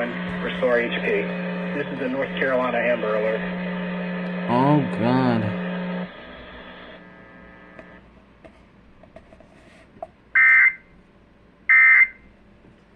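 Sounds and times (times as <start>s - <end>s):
faint radio hum: 0.0s - 3.7s, 4.3s - 5.8s
harsh electronic buzz: 0.0s - 8.0s.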